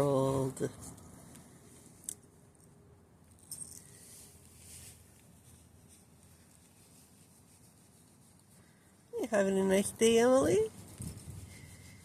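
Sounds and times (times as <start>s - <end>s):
faint rustling: 3.3s - 9.1s, 10.4s - 12.0s.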